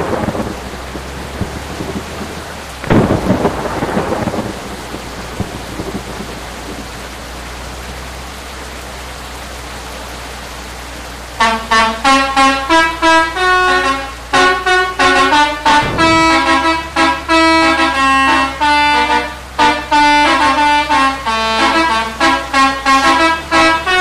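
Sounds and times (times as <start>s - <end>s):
steady rushing noise: 0.0s - 7.5s, 13.8s - 17.4s
bus horn playing a tune: 11.4s - 24.0s.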